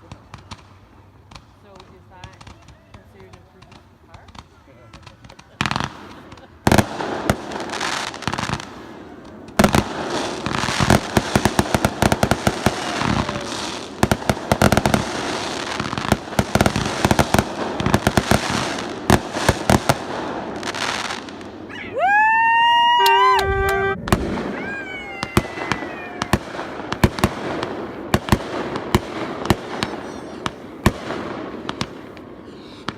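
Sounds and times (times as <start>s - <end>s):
crackle of rapid firework pops: 0.0s - 21.3s
firework bangs: 0.0s - 32.9s
rising firework whistle: 11.8s - 13.9s, 21.7s - 27.0s.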